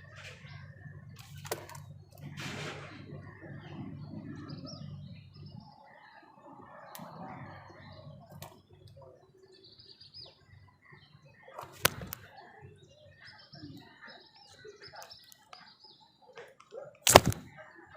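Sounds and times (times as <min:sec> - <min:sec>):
small birds chirping: 0:00.0 - 0:17.9
sharp loud snap: 0:11.6 - 0:12.2, 0:17.0 - 0:17.5.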